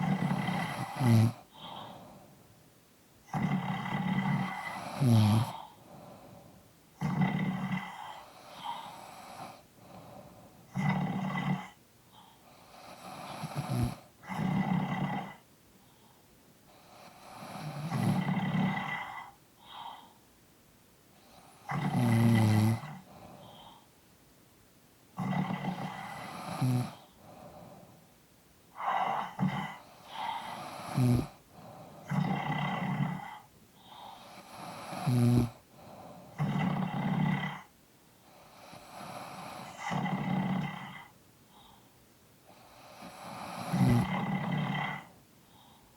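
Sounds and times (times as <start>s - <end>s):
people snoring: 0.0s - 2.2s, 3.3s - 6.4s, 7.0s - 11.8s, 12.6s - 15.4s, 16.8s - 19.8s, 21.2s - 23.7s, 25.2s - 27.8s, 28.8s - 37.7s, 38.3s - 41.1s, 42.5s - 45.1s
quiet breathing: 0.0s - 20.4s, 21.0s - 24.1s, 25.1s - 45.9s.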